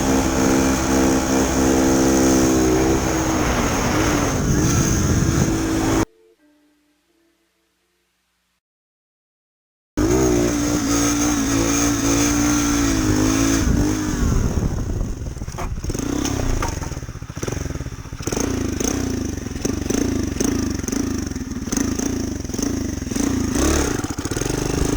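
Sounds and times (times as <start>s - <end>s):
small motorcycle engine revving: 0.0s - 6.1s, 10.0s - 24.9s
sharp knocks: 15.5s - 17.1s.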